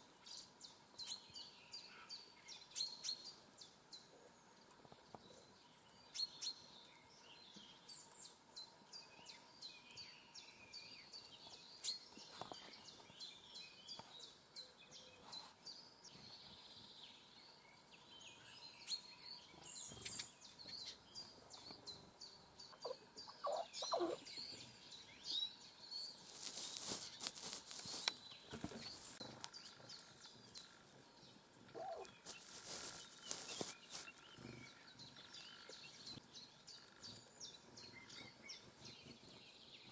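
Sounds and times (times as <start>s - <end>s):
songbirds chirping: 0.0s - 39.9s
rustling bursts: 26.2s - 29.2s, 32.2s - 34.2s.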